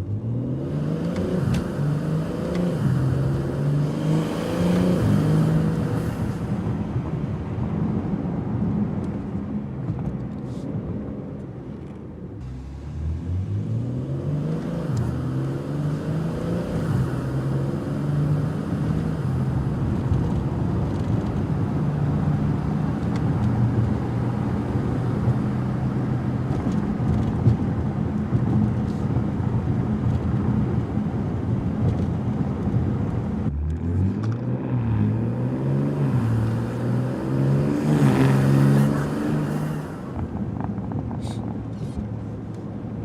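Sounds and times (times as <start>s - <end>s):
car engine accelerating: 0.0s - 8.0s, 12.4s - 43.0s.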